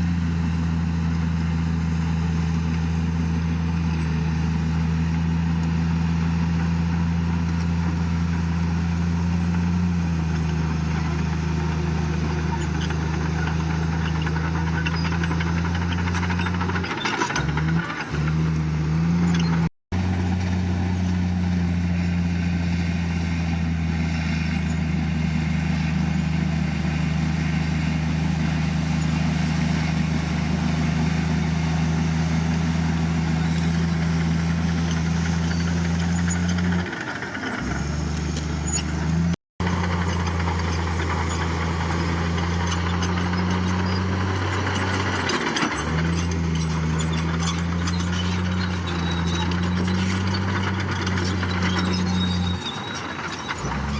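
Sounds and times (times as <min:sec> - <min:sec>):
bulldozer diesel engine running: 0:00.0 - 0:53.9
clatter: 0:10.3 - 0:19.7, 0:33.4 - 0:53.9.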